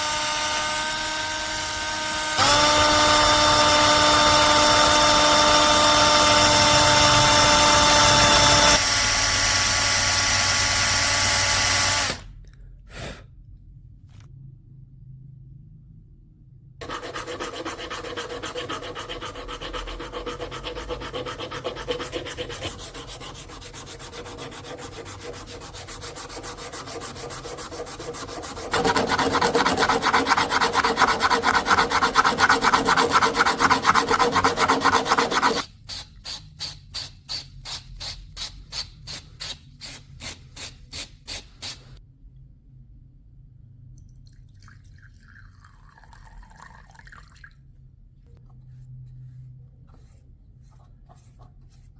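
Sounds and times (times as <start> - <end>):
hand sanding strokes: 16.8 - 35.7.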